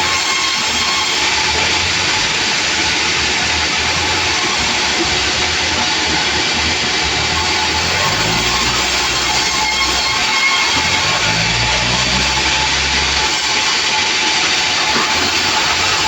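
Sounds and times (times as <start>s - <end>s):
sawmill hiss: 0.0s - 16.0s
low throbbing hum: 1.4s - 13.8s.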